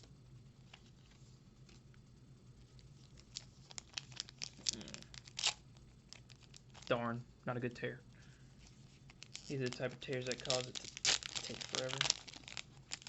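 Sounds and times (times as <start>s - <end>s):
foil wrapper crinkling and tearing: 3.0s - 7.0s, 9.0s - 13.0s.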